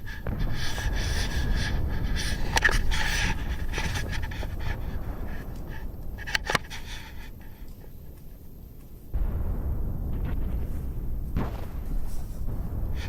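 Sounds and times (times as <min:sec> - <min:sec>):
person breathing hard: 0:00.0 - 0:08.4
sharp clicks: 0:00.0 - 0:09.0
handling noise scraping: 0:00.0 - 0:09.2, 0:10.2 - 0:13.0.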